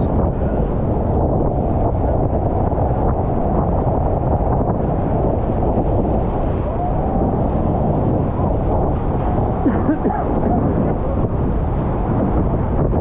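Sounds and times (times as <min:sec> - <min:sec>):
waterfall roaring: 0:00.0 - 0:13.0
wind buffeting microphone: 0:00.0 - 0:13.0.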